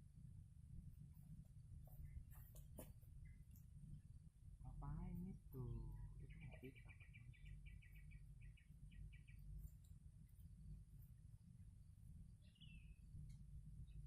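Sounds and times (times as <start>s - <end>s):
steady low rumble: 0.0s - 14.0s
small bird chirping: 5.0s - 11.1s, 12.0s - 14.0s.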